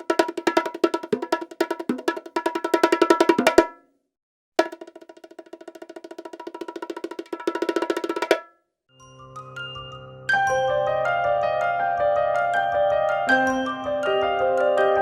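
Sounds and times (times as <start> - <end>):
rapid roll of pitched knocks: 0.0 - 3.7, 4.6 - 8.4.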